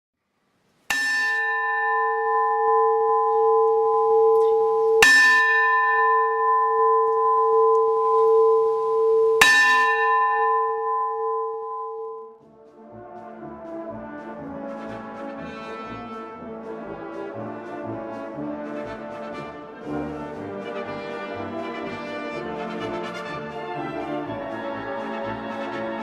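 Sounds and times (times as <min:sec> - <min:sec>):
large bell ringing: 0:00.9 - 0:12.4.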